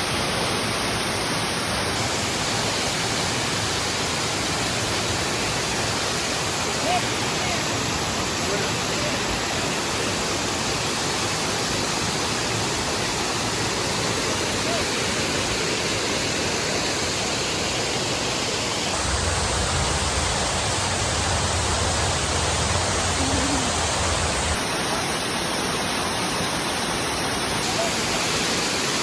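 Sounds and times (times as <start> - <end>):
waterfall rushing: 0.0 - 29.0
heavy low rumble: 18.9 - 24.6.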